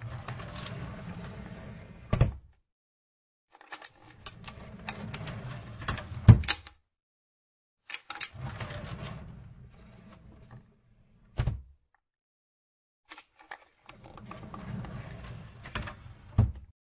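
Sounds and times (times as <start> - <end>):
drawer sliding on runners: 0.0 - 2.4, 3.9 - 6.7, 8.2 - 11.6, 13.9 - 16.6
drawer knocking shut: 11.4 - 11.7.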